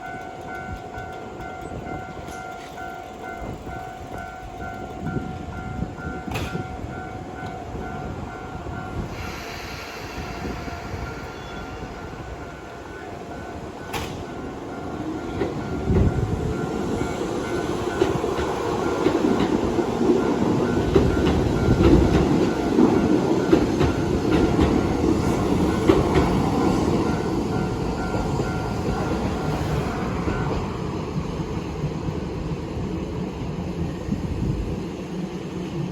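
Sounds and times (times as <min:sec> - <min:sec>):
level crossing warning bell: 0:00.0 - 0:09.2, 0:10.8 - 0:30.8
train wheels clacking over rail joints: 0:13.8 - 0:30.7.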